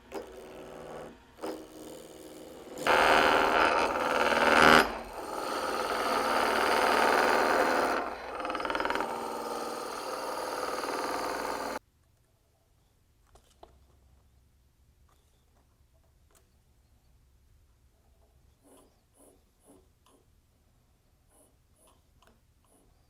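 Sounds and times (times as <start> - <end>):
turning tool cutting wood: 0.0 - 11.8
wood lathe spinning: 0.0 - 11.8.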